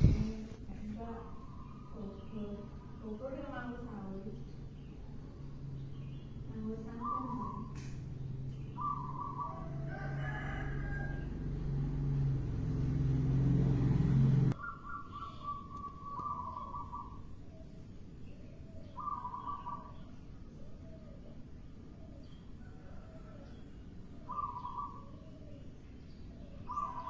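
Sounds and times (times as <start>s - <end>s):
loud steady low hum: 0.0s - 14.6s
dove cooing: 6.8s - 7.7s, 8.7s - 11.2s, 14.6s - 17.8s, 18.5s - 21.4s, 22.1s - 25.6s, 26.6s - 27.0s.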